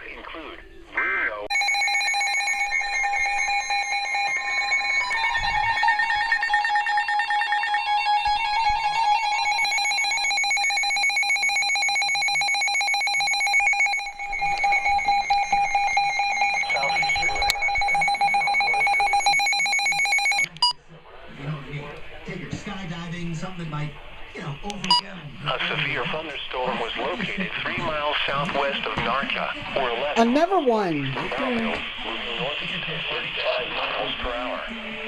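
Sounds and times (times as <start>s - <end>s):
two-tone electronic alarm: 1.1s - 20.8s.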